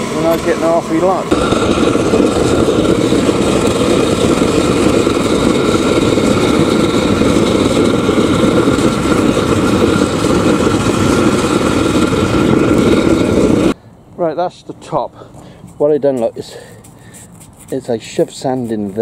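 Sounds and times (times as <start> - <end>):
forge burner rumbling: 0.0 - 14.9.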